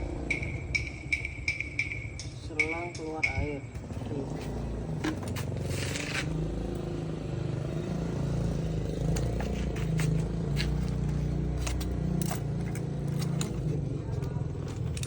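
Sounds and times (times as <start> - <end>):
low rumble: 0.0 - 2.6
hose scraping: 5.0 - 6.4.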